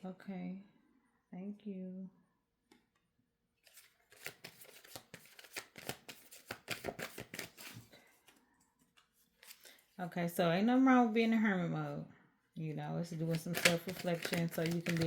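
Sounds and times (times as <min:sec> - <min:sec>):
cards being shuffled: 0:03.6 - 0:09.8, 0:13.2 - 0:15.0.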